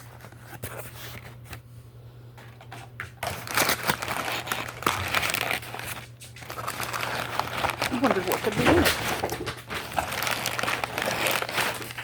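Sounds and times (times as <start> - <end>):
packaging crinkling: 2.7 - 12.0.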